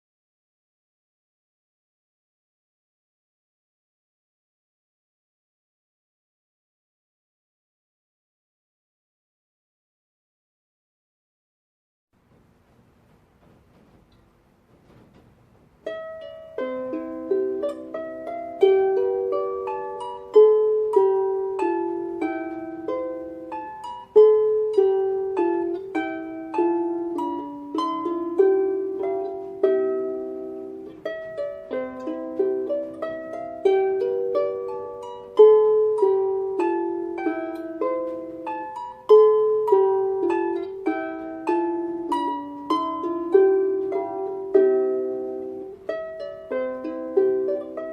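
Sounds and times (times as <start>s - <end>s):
harp playing slow melody: 15.8s - 47.9s.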